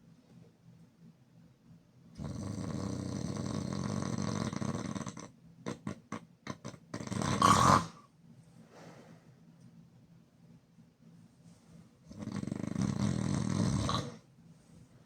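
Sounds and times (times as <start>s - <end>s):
person snoring loudly: 12.1s - 14.2s.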